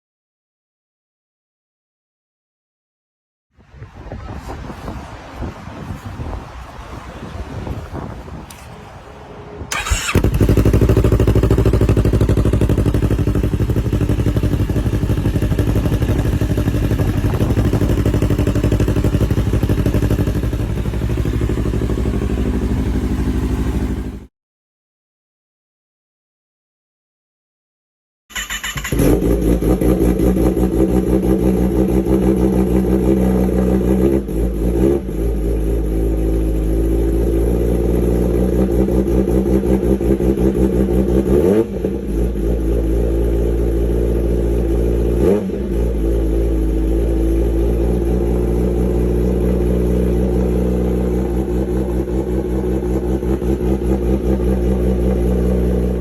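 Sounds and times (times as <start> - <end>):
motorcycle engine idling: 9.7 - 24.3
motorcycle throttle blips: 9.7 - 24.3.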